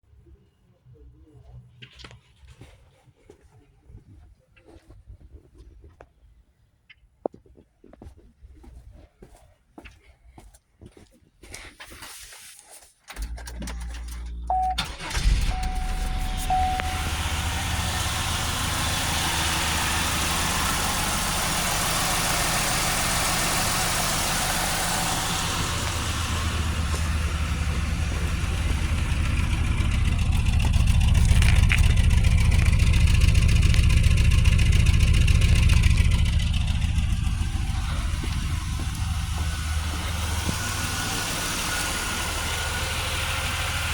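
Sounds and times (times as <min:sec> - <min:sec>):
engine cranking on starter: 0:13.1 - 0:43.9
misfiring engine idling: 0:13.2 - 0:43.9.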